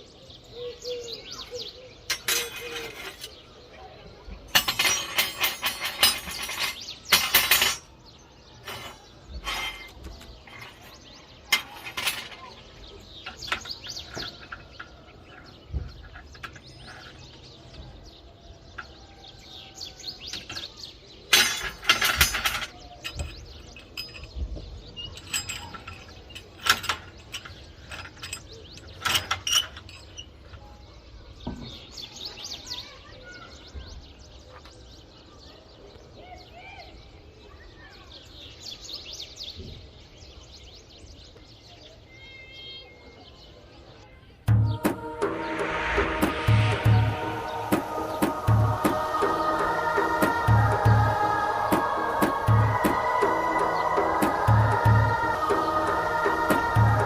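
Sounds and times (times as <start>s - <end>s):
steel parts clanking and clinking: 2.1s - 3.5s, 4.4s - 8.0s, 8.6s - 17.9s, 21.3s - 30.7s.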